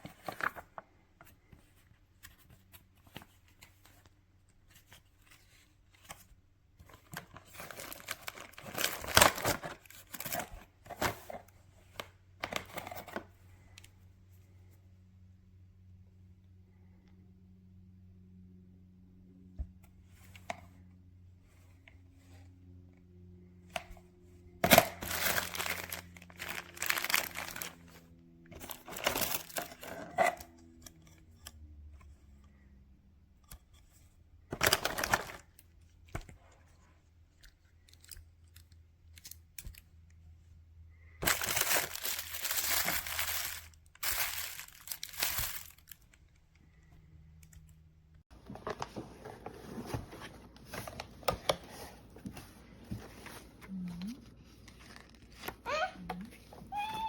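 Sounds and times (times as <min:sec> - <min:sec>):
faint low hum: 0:00.0 - 0:57.0
crinkling tearing noise: 0:24.6 - 0:28.0, 0:41.2 - 0:46.2.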